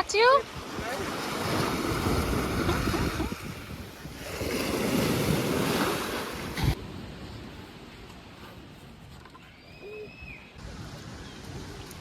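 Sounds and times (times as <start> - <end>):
surf washing in at shore: 0.0 - 7.2
wind buffeting microphone: 0.0 - 9.2.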